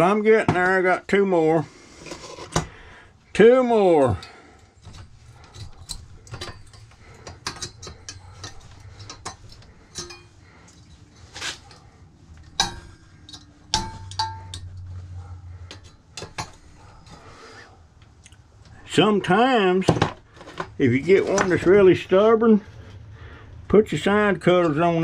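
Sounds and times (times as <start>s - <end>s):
metal clicks and clinks: 4.2s - 11.0s, 12.4s - 14.9s.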